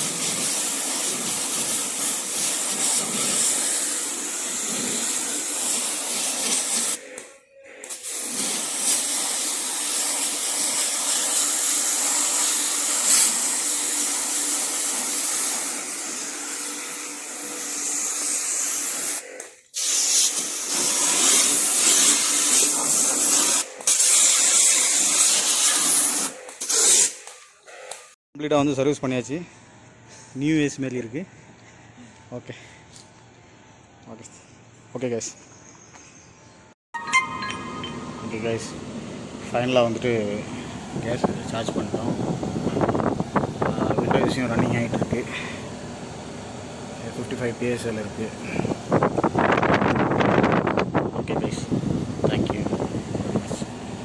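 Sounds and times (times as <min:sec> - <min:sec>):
water jet spray hissing: 0:00.0 - 0:07.2, 0:07.8 - 0:27.9.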